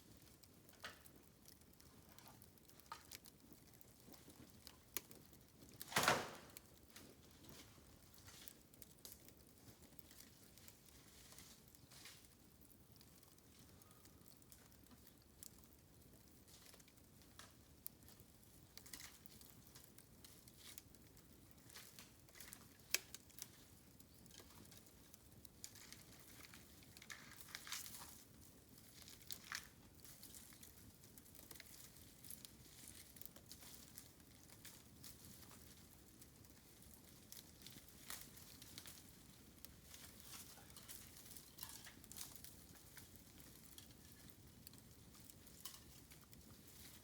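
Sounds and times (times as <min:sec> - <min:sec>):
bonfire crackling: 0:00.0 - 0:47.0
bamboo snapping in fire: 0:00.4 - 0:09.4, 0:16.5 - 0:47.0
loud pop: 0:05.9 - 0:06.6.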